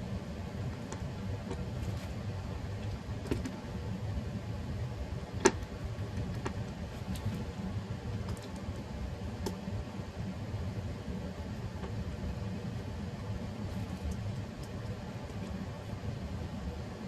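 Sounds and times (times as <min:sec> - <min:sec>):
steady low rumble: 0:00.0 - 0:17.0.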